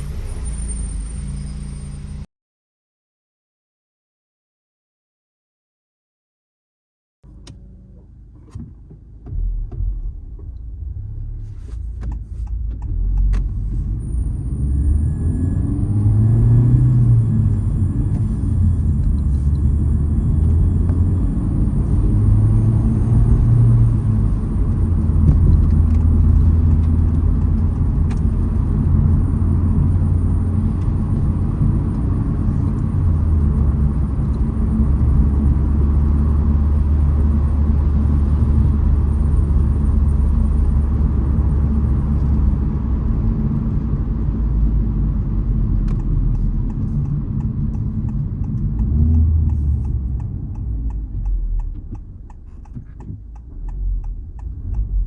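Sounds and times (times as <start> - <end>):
car engine rumble: 0.0 - 2.3, 7.2 - 55.0
road noise: 0.0 - 2.3, 7.2 - 55.0.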